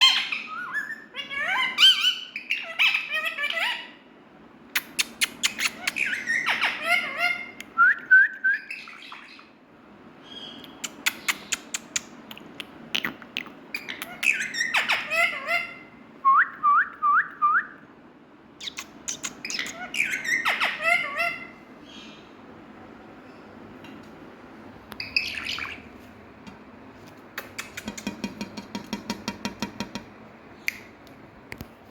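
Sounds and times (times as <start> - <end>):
parakeet squawks and chirps: 0.0 - 4.0, 4.8 - 7.6, 8.6 - 9.6, 13.0 - 16.0, 18.6 - 22.3, 25.0 - 26.0.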